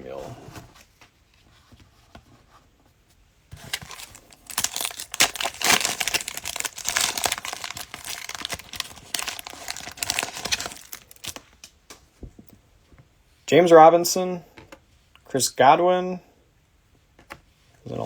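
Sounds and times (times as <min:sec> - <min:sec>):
cellophane wrapper crinkling and tearing: 0:03.6 - 0:11.6.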